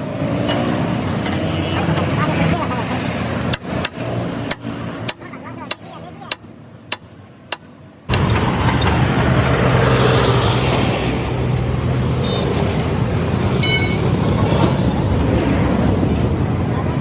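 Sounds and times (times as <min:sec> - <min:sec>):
road traffic: 0:00.0 - 0:17.0
high car horn toots: 0:12.2 - 0:12.6, 0:13.6 - 0:14.1.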